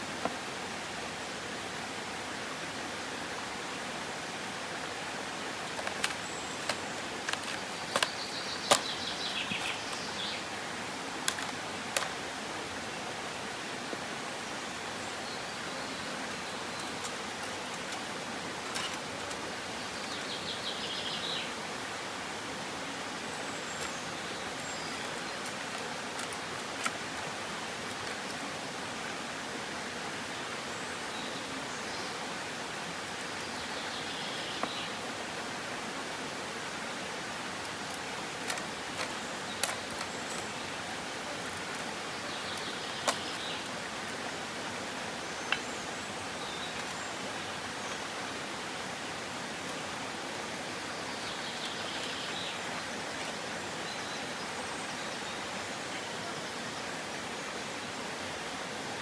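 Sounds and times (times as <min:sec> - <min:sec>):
creek water rushing: 0:00.0 - 0:59.0
bird calls: 0:05.6 - 0:10.6, 0:23.0 - 0:28.5, 0:37.9 - 0:48.2.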